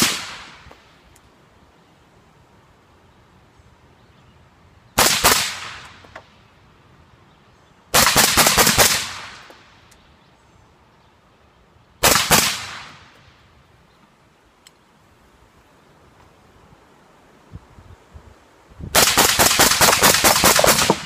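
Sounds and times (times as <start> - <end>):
gunshot echo: 0.0 - 0.6, 12.0 - 13.1, 19.0 - 21.0
suppressed rifle shots: 0.0 - 0.7, 5.0 - 6.3, 7.9 - 9.7, 12.0 - 13.2, 19.0 - 21.0.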